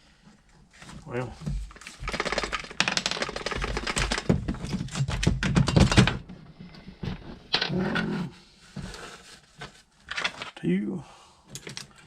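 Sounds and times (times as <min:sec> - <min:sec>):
metal parts and tools clattering: 0:01.7 - 0:06.2.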